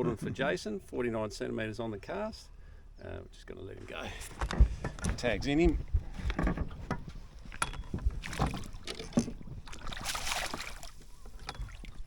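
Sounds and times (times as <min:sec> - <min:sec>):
knocks and handling on a boat: 0:04.2 - 0:12.0.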